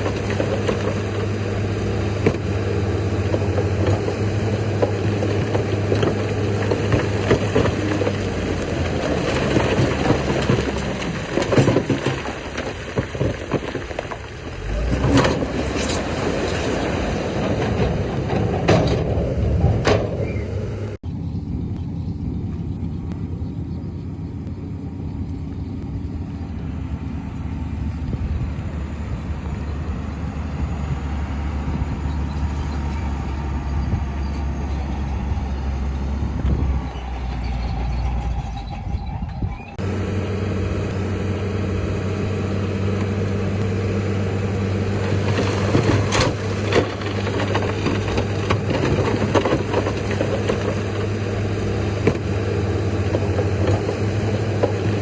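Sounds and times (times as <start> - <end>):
sharp knocks and rattles: 0.0 - 20.9, 45.0 - 55.0
diesel machinery engine running: 0.0 - 55.0.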